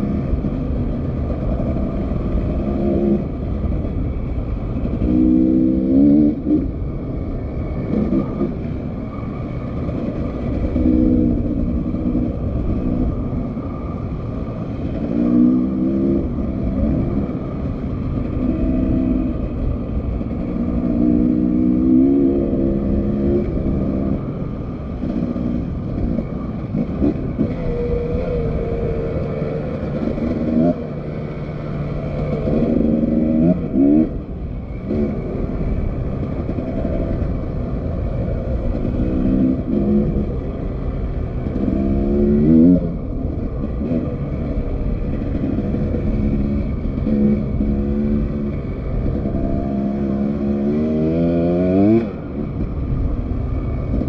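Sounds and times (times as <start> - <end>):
dirt bike engine revving: 25.0 - 34.2.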